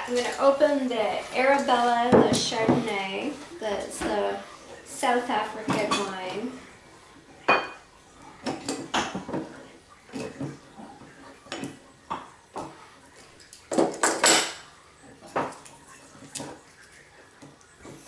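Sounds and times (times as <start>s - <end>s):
glasses and bottle clinking: 7.4s - 7.8s.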